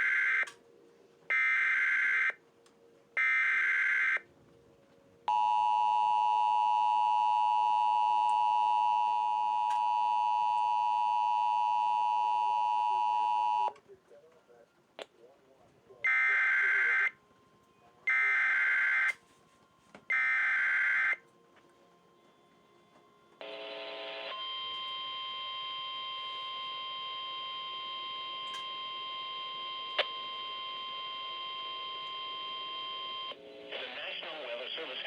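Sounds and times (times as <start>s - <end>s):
steady warning alarm tone: 16.0s - 17.5s, 18.1s - 19.2s.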